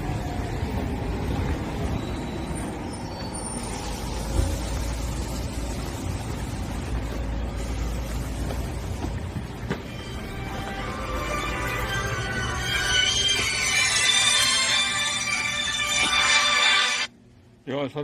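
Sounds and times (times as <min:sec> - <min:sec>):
vehicle engine rumble: 0:00.0 - 0:11.2.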